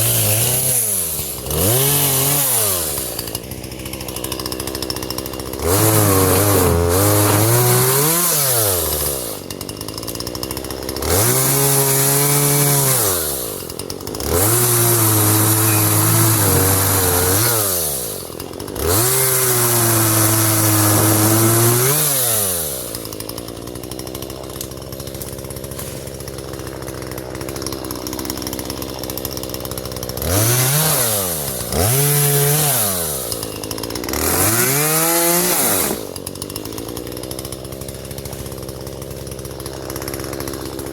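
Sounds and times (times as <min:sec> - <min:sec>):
chainsaw revving and idling: 0:00.0 - 0:40.9.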